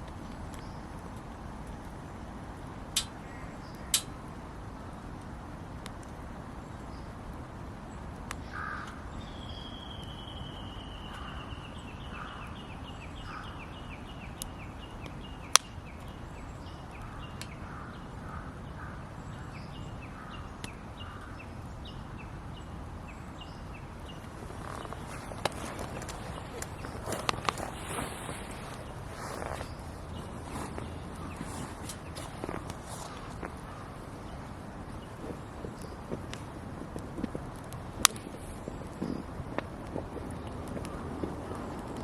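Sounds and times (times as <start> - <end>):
campfire crackling and popping: 0.0 - 42.0
small bird singing: 8.4 - 36.2
crows cawing: 8.5 - 9.1, 11.1 - 11.5, 12.2 - 12.6, 13.2 - 13.6, 17.2 - 19.1.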